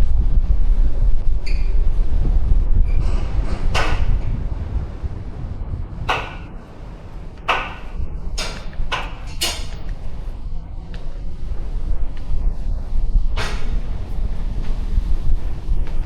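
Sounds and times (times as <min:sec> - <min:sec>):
steady low rumble: 0:00.0 - 0:16.0
sharp clatters: 0:03.1 - 0:05.2, 0:06.0 - 0:10.7.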